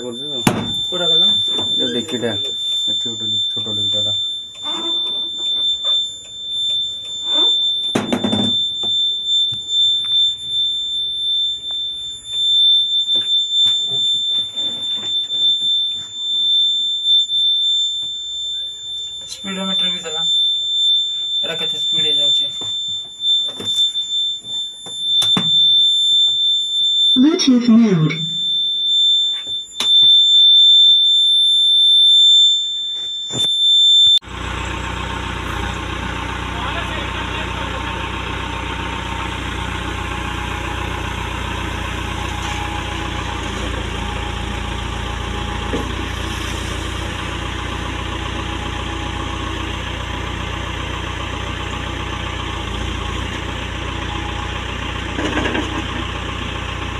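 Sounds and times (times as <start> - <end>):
high-pitched electronic tone: 0.0 - 50.7
high warning buzzer beep: 0.0 - 56.8
diesel engine running: 34.2 - 56.9.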